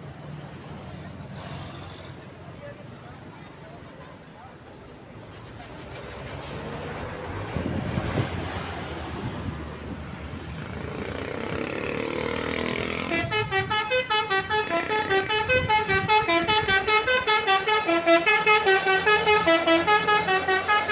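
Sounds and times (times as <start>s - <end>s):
bus engine and tyres: 0.0s - 20.9s
musical bus horn melody: 12.4s - 20.9s.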